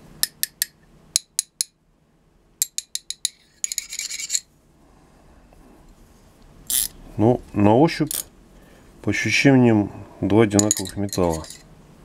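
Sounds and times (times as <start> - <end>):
metal wrenches clicking: 10.6 - 11.6.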